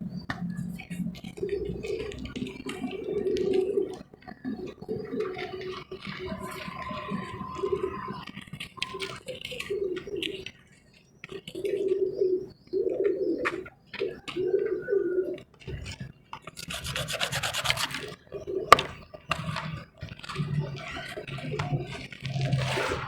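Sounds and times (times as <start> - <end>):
gritty rubbing by hand: 16.6 - 18.1.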